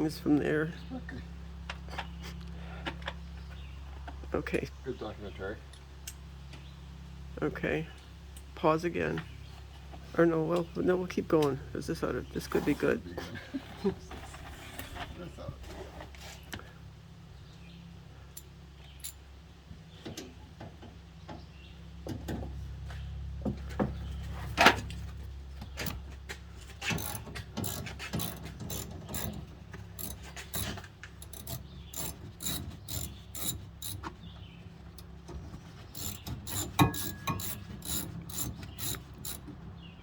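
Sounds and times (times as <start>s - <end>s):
low steady hum: 0.0s - 40.0s
ratchet wrench clicking: 26.9s - 29.4s, 30.0s - 34.0s, 35.9s - 39.4s.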